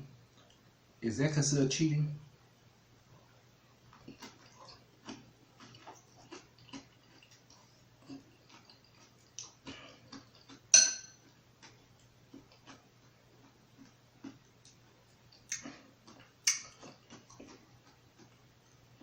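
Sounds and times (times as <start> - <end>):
chewing clicks and smacks: 3.9 - 10.7, 11.6 - 18.4.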